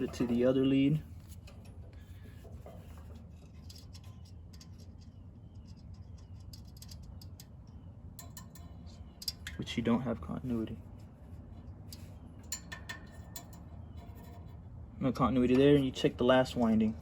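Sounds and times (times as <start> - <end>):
probe tips clicking and scraping: 0.0 - 9.6.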